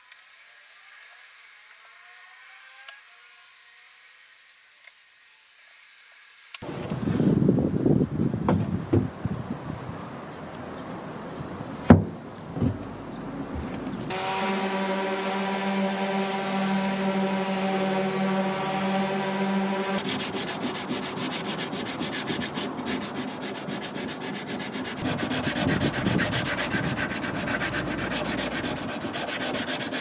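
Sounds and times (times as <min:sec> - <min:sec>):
knocks on wood: 0:08.4 - 0:09.2, 0:11.8 - 0:12.9, 0:13.5 - 0:14.0
rhythmic rubbing against wood: 0:11.5 - 0:30.0
power tool motor humming: 0:11.9 - 0:30.0.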